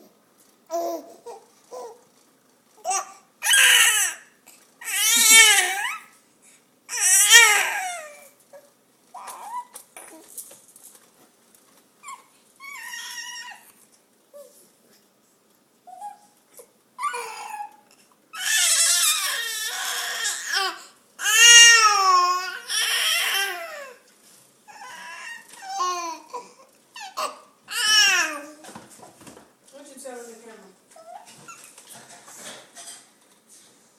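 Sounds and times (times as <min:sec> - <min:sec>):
baby squealing and wailing: 0:02.8 - 0:06.1, 0:06.9 - 0:08.3, 0:09.2 - 0:10.2, 0:12.0 - 0:13.7, 0:17.0 - 0:24.0, 0:24.7 - 0:26.4, 0:27.0 - 0:28.6.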